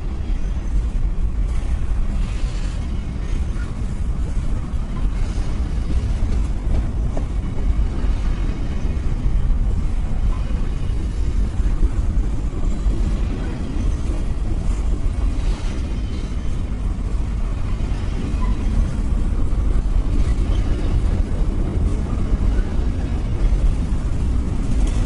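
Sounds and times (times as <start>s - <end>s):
diesel locomotive rumbling: 0.0s - 25.0s.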